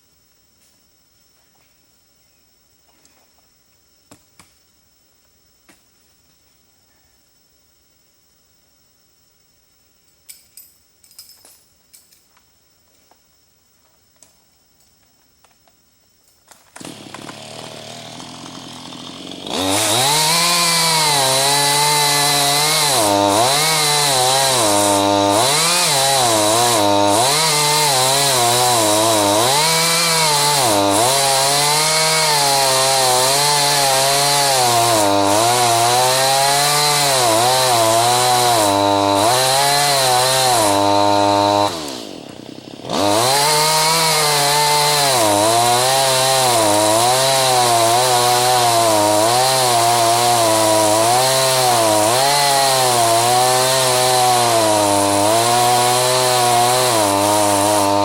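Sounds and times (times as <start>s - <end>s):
chainsaw cutting wood: 16.5s - 58.0s.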